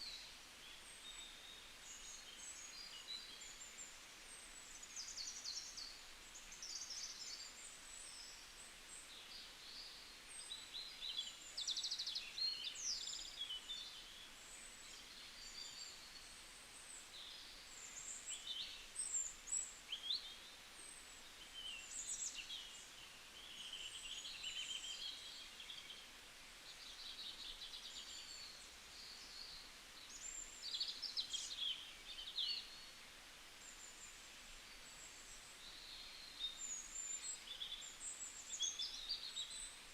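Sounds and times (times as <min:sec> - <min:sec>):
faint steady hiss: 0:00.0 - 0:39.9.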